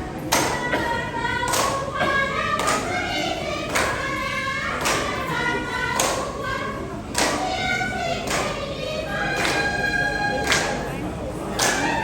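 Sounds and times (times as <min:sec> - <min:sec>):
group of voices singing: 0:00.0 - 0:12.0.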